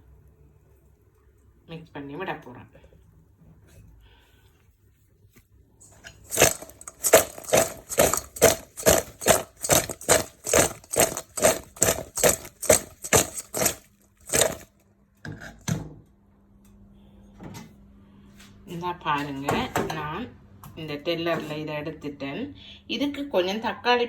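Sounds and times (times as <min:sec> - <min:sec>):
chips rattling in a bowl: 0:06.1 - 0:14.7.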